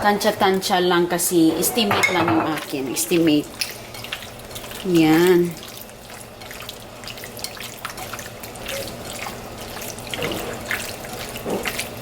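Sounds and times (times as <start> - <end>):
liquid dripping and splashing: 2.6 - 12.0.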